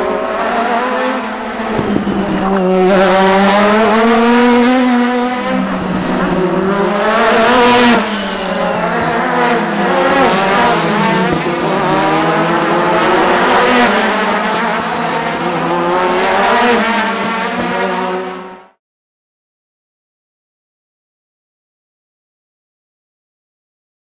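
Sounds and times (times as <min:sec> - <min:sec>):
race cars passing at speed: 0:00.0 - 0:18.8.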